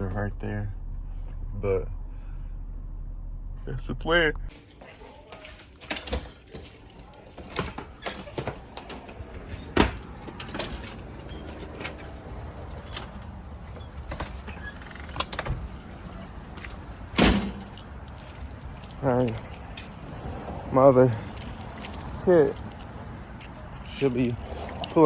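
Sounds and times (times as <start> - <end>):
low steady rumble: 0.0 - 4.7.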